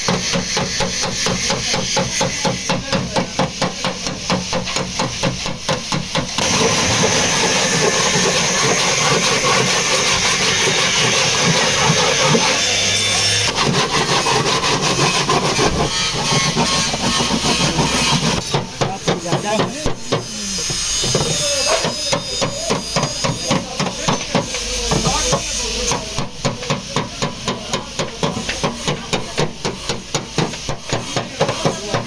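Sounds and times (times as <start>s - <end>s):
hammering on sheet metal: 0.0s - 32.0s
harsh rasping noise: 6.4s - 26.2s.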